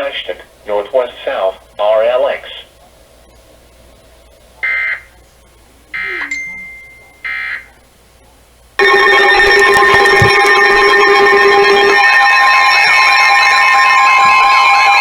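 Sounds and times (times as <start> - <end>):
shrill digital data tones: 8.8 - 15.0.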